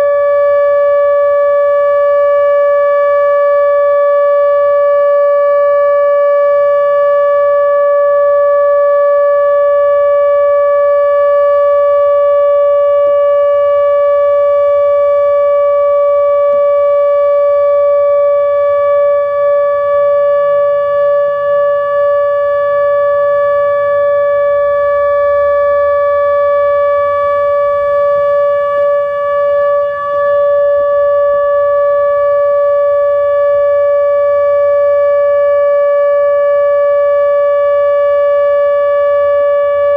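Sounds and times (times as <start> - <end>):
steady warning siren tone: 0.0 - 39.9.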